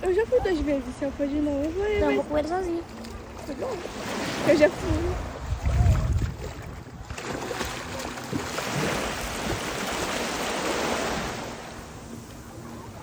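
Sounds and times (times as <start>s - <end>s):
sea surf washing in: 3.6s - 13.0s.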